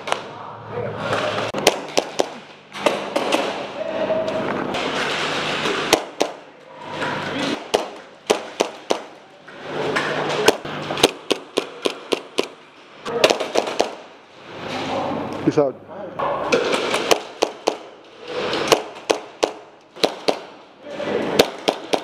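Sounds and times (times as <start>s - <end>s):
airsoft gun shots: 1.6s - 3.7s, 5.9s - 6.4s, 7.6s - 9.2s, 10.4s - 12.6s, 13.2s - 14.1s, 16.5s - 18.0s, 18.6s - 20.6s, 21.4s - 22.0s.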